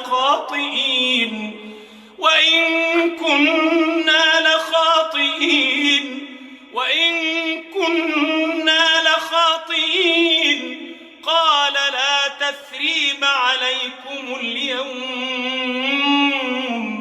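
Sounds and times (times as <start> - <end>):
man chanting melodically: 0.0 - 17.0
man drawing breath: 1.6 - 2.2.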